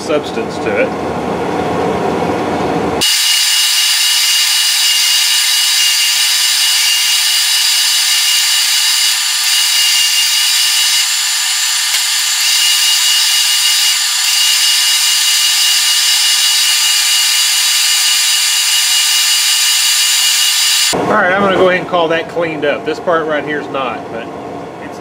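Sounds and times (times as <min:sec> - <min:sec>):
cutting tool cutting metal: 0:03.0 - 0:21.0
metal lathe whine: 0:03.0 - 0:21.0.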